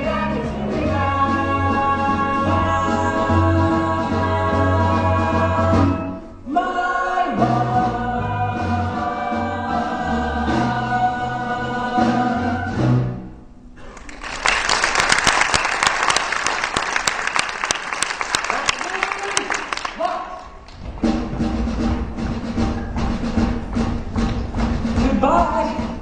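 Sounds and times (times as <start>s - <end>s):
ensemble singing with music: 0.0s - 13.4s
audience applause: 13.8s - 20.8s.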